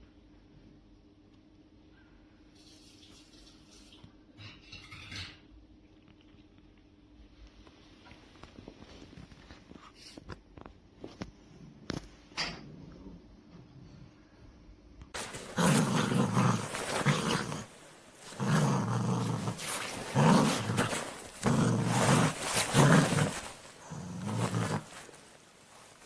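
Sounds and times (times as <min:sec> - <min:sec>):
dog growling: 0:15.2 - 0:25.3.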